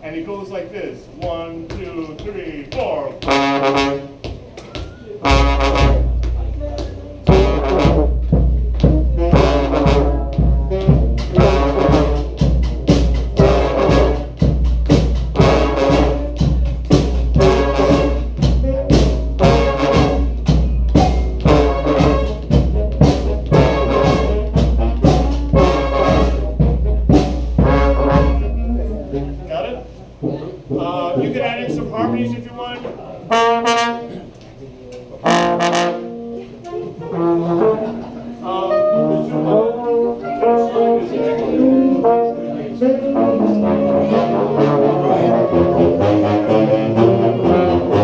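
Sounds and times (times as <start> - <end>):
steady drum beat: 0.7 - 34.1
brass band playing funk riff: 3.1 - 4.3, 5.2 - 29.7, 30.7 - 32.6, 33.2 - 34.3, 35.2 - 48.0
low bass line: 5.2 - 30.4.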